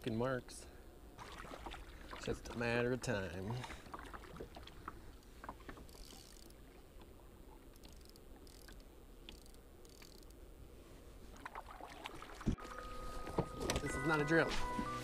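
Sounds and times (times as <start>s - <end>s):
faint water sounds from kayak: 0.1s - 15.0s
small clicks: 7.7s - 10.4s.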